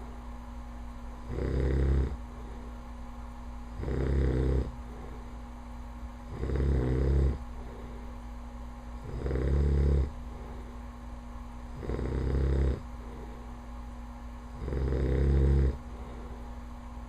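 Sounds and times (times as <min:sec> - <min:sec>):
quiet breathing: 0:00.0 - 0:00.4, 0:01.2 - 0:03.2, 0:03.8 - 0:16.9
man snoring loudly: 0:01.3 - 0:02.2, 0:03.8 - 0:04.7, 0:06.3 - 0:07.4, 0:09.0 - 0:10.1, 0:11.8 - 0:12.8, 0:14.6 - 0:15.8.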